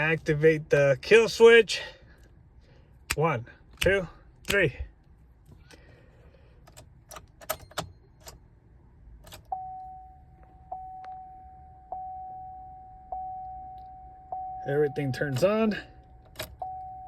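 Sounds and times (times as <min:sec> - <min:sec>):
ignition key clicks: 0:03.0 - 0:04.7, 0:06.6 - 0:08.5, 0:09.2 - 0:11.3, 0:15.2 - 0:17.0
car warning chime: 0:09.3 - 0:17.0.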